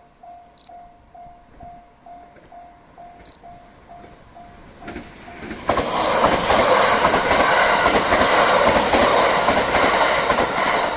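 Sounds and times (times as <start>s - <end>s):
level-crossing warning bell: 0.0s - 5.6s
train passing with loud rush: 0.0s - 10.9s
wheels clacking over rail joints: 2.3s - 10.9s.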